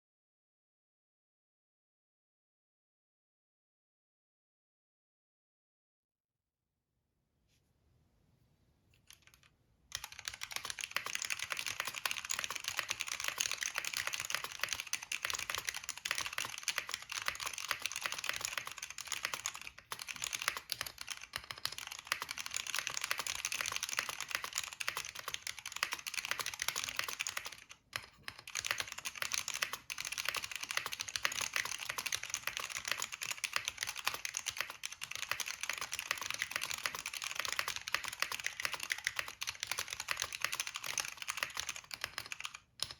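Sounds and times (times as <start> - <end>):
fast mechanical keyboard typing: 9.1 - 42.9.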